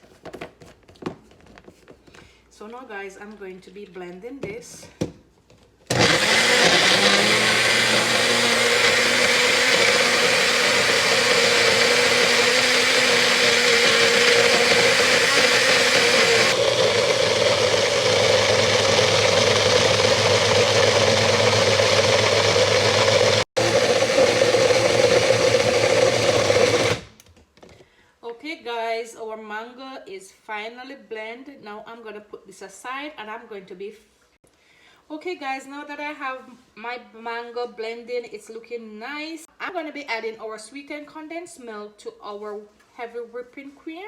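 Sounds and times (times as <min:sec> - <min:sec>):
blender running: 0:05.9 - 0:27.2.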